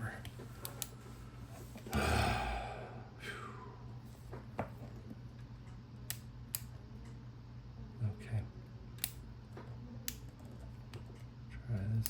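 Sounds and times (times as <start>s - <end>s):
person sighing: 1.9s - 3.7s.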